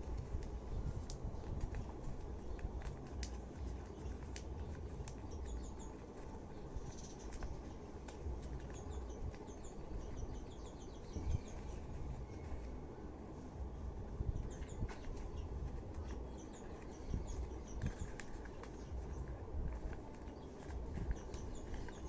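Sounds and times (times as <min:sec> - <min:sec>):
faint clicks: 0:00.0 - 0:10.5
small birds chirping: 0:00.0 - 0:22.0
steady low rumble: 0:00.0 - 0:22.0.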